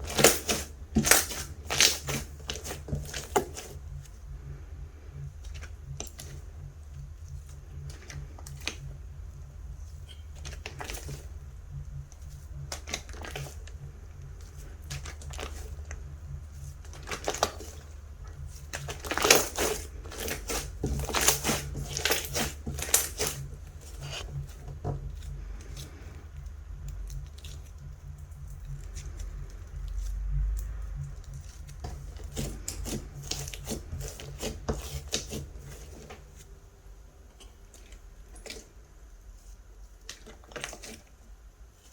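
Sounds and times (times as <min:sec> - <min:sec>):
slime crackling and popping: 0:00.0 - 0:03.8, 0:12.0 - 0:36.0
steady low hum: 0:00.0 - 0:41.9.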